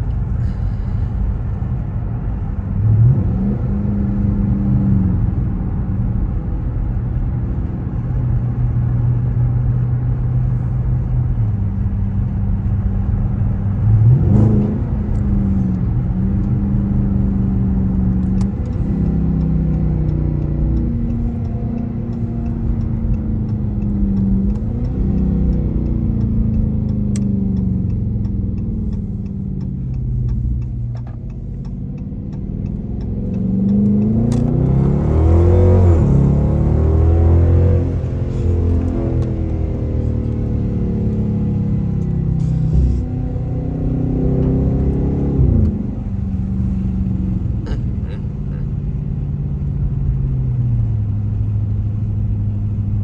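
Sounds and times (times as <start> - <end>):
car engine shifting gears: 0.0 - 53.0
road rumble: 0.0 - 53.0
faint ticking: 18.6 - 34.4.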